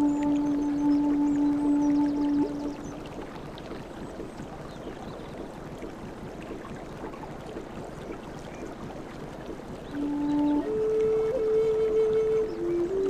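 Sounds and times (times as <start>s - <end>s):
low wooden flute note: 0.0s - 3.0s, 10.0s - 13.0s
sea waves: 0.0s - 13.0s.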